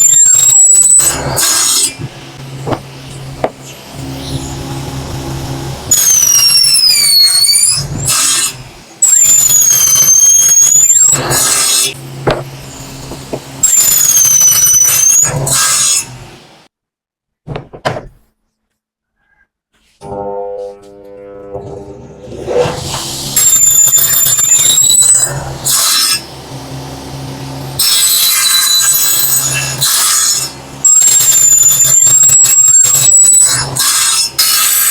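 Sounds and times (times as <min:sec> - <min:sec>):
power saw squealing whine: 0:05.9 - 0:12.0, 0:13.6 - 0:15.6, 0:22.4 - 0:26.2, 0:27.8 - 0:34.9.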